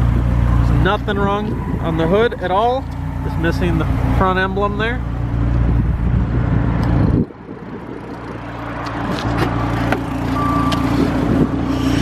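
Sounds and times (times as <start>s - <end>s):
car engine idling: 0.0s - 12.0s
steady warning chime: 10.3s - 11.0s.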